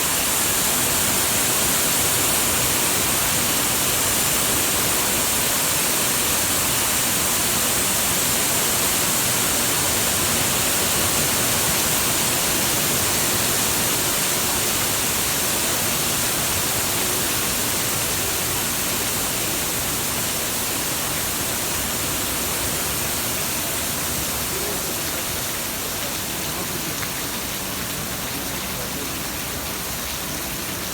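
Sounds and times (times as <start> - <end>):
rain falling steadily: 0.0 - 30.9.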